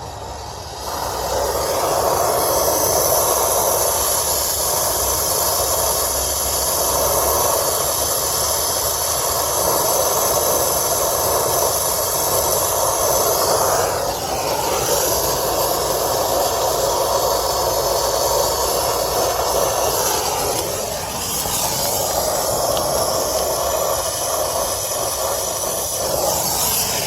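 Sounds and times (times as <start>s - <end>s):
torch flame hissing: 0.0s - 27.0s.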